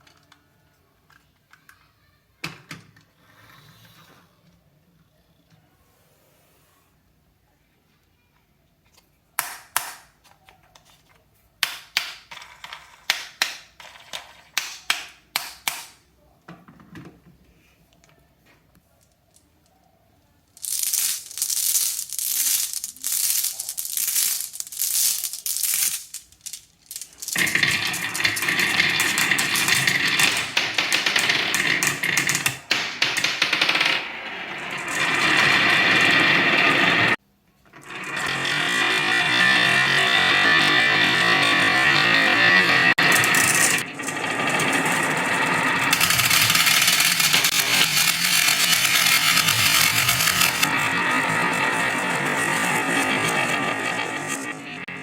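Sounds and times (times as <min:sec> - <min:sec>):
marbles clattering together: 0:11.6 - 0:16.0, 0:20.5 - 0:37.2, 0:37.8 - 0:55.0
marbles clicking down wooden run: 0:11.6 - 0:16.0, 0:20.6 - 0:37.2, 0:37.8 - 0:55.0.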